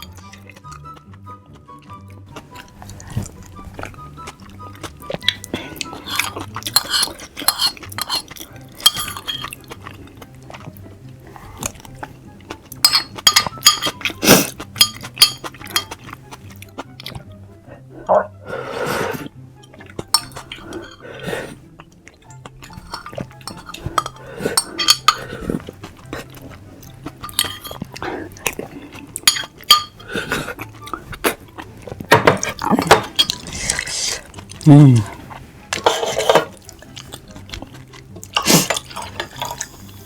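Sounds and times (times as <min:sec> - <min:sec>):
eating noises: 0:00.0 - 0:40.0
quiet background music: 0:00.0 - 0:40.0
utensils clinking on dishes: 0:05.9 - 0:09.9, 0:12.7 - 0:16.2, 0:20.1 - 0:21.1, 0:22.6 - 0:30.8, 0:32.1 - 0:34.4, 0:35.7 - 0:40.0.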